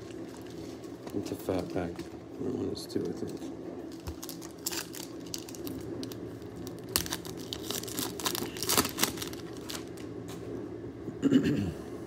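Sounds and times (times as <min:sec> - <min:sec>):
plastic wrapper tearing and crinkling: 0:03.9 - 0:10.1.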